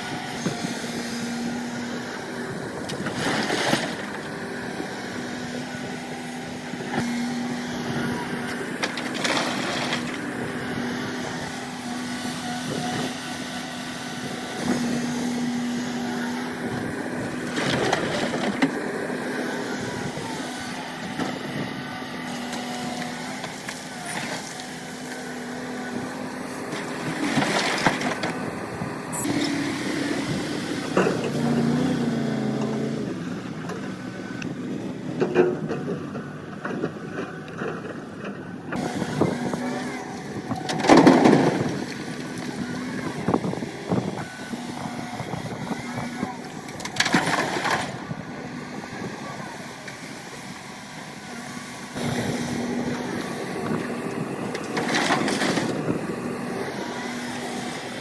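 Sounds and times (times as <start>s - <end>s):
excavator diesel engine running: 0.0s - 58.0s
bucket grinding into rock: 8.8s - 10.3s, 26.8s - 28.4s, 47.0s - 48.0s, 54.6s - 56.3s.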